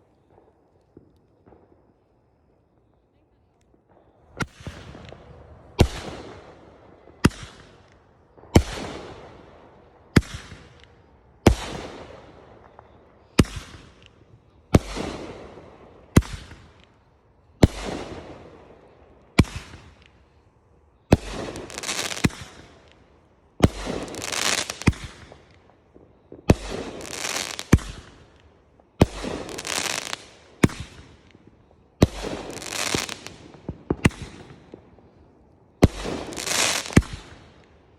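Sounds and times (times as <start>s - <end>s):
firework bangs: 4.0s - 9.5s, 17.6s - 20.1s, 21.1s - 23.0s, 23.6s - 35.1s, 35.8s - 37.6s
firework crackling hiss: 21.2s - 22.9s, 23.7s - 25.6s, 26.5s - 28.3s, 29.0s - 31.1s, 32.0s - 33.4s, 35.8s - 37.4s.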